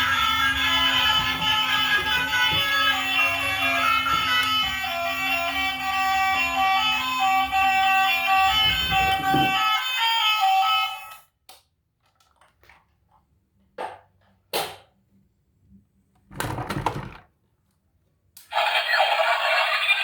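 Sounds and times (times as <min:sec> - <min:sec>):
short melody: 0:00.0 - 0:09.6.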